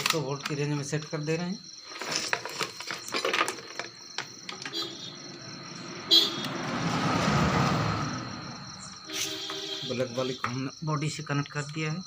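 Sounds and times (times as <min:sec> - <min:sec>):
vehicle passing by: 0:04.9 - 0:09.9
horn toot: 0:06.1 - 0:06.6, 0:09.1 - 0:10.5.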